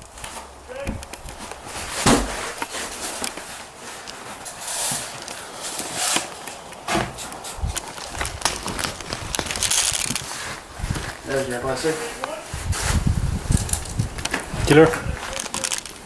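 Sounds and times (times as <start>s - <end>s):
gear knocking and rustling: 0.0s - 16.0s
thumps and swishes: 12.5s - 15.2s.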